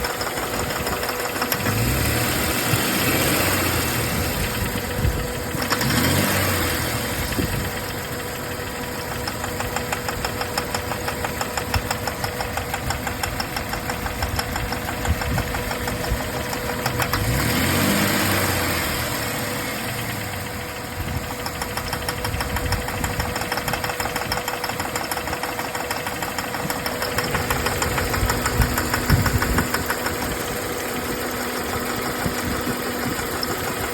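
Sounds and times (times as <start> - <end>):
engine ticking knock: 0.0 - 33.9
car engine revving: 1.5 - 4.8, 5.6 - 7.5, 16.2 - 20.5, 25.9 - 33.9.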